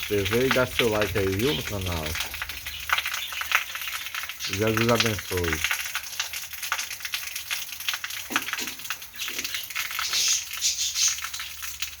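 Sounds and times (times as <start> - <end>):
heavy rain falling: 0.0 - 12.0.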